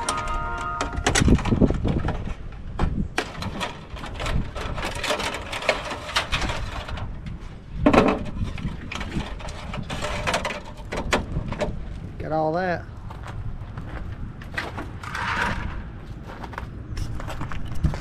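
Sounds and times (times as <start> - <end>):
metal scrap clattering: 3.2 - 11.6, 14.4 - 16.6.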